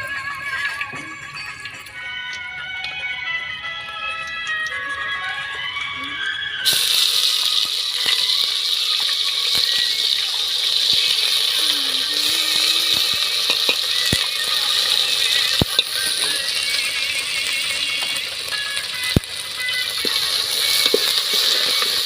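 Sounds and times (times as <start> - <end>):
food sizzling in hot oil: 3.8 - 22.0
oil popping: 6.6 - 22.0.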